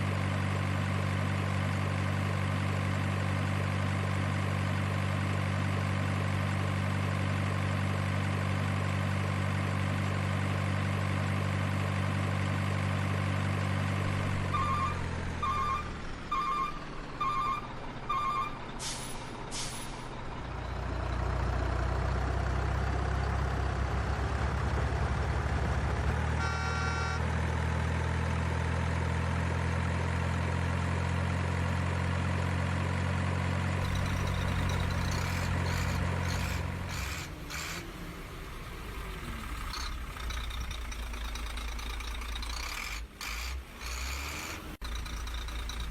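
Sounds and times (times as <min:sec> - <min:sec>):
diesel engine idling: 0:00.0 - 0:32.8, 0:33.4 - 0:45.9
brief tone: 0:14.4 - 0:18.6, 0:26.4 - 0:27.4
reversing beeps: 0:14.6 - 0:18.6, 0:26.4 - 0:27.2
air brake hisses: 0:18.8 - 0:20.1.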